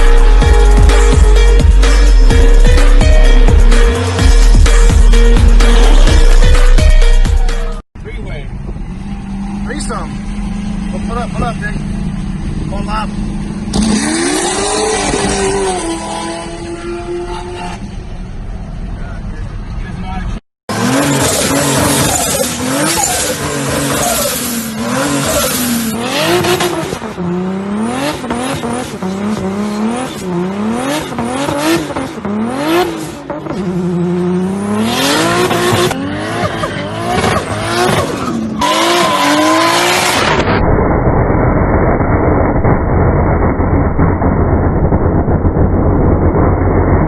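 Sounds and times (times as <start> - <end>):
car engine revving: 8.1 - 18.9, 20.7 - 47.0
muffled low rumble: 40.5 - 47.0.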